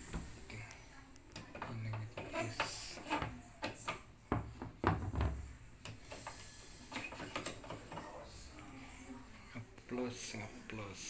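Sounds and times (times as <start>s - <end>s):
hard parts clicking and scraping: 1.3s - 4.0s, 5.8s - 8.2s.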